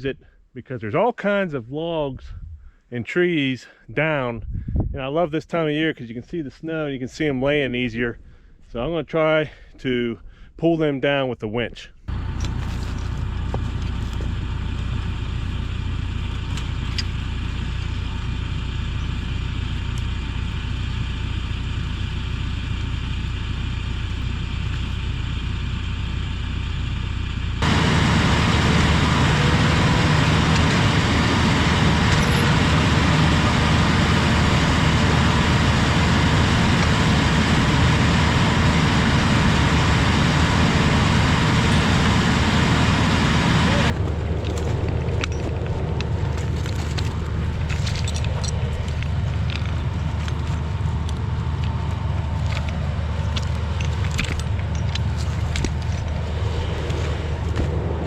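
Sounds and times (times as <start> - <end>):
tractor diesel engine running: 12.1 - 58.0.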